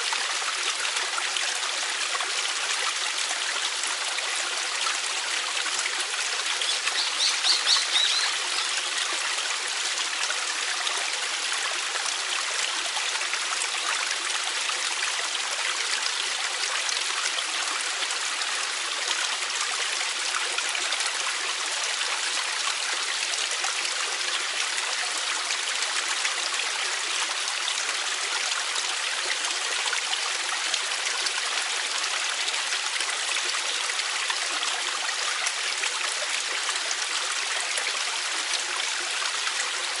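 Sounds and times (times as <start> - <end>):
stream flowing: 0.0 - 40.0
bird chirping: 6.7 - 8.7.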